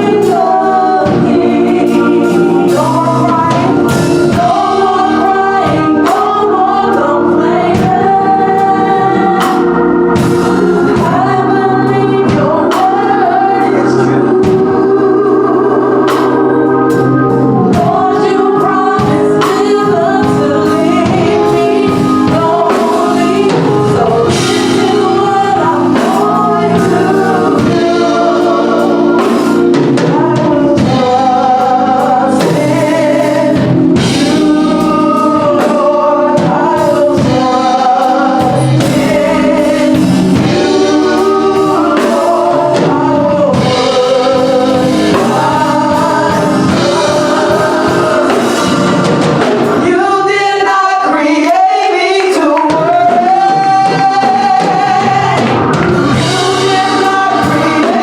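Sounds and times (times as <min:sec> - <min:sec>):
drums: 0:00.0 - 0:58.0
keyboard chords: 0:00.0 - 0:58.0
vocal group singing gospel: 0:00.0 - 0:58.0.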